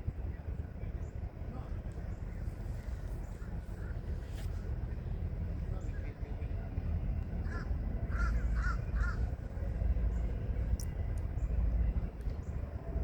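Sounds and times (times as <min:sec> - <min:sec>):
steady low rumble: 0:00.0 - 0:13.0
crow cawing: 0:07.4 - 0:09.2.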